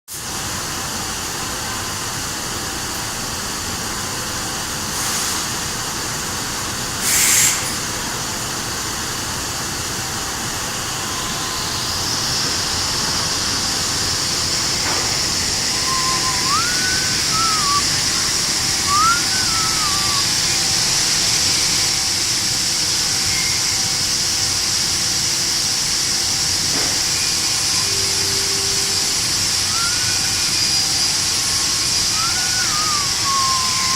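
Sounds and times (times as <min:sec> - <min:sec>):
short hisses: 0:07.0 - 0:07.8
machine hum: 0:09.9 - 0:24.3
belt sander whining: 0:12.8 - 0:22.0.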